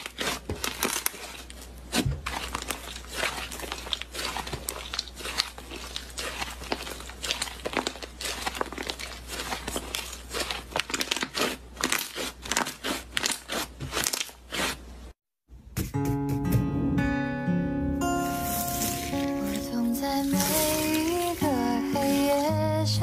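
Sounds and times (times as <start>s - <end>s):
slime crackling and popping: 0.0s - 14.8s.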